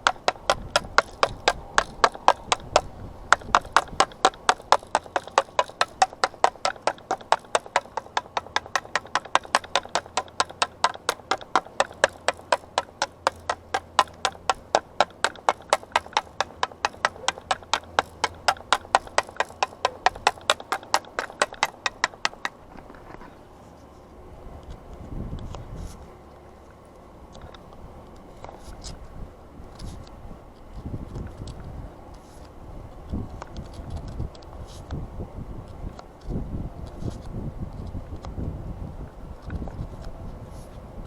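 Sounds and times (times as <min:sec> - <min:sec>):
sharp evenly spaced clicks: 0:00.0 - 0:22.6.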